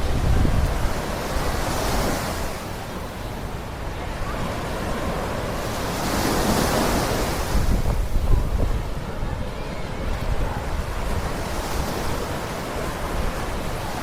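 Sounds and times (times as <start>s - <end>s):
wind buffeting microphone: 0.0s - 2.6s, 6.5s - 14.0s
surf washing up on beach: 0.0s - 14.0s.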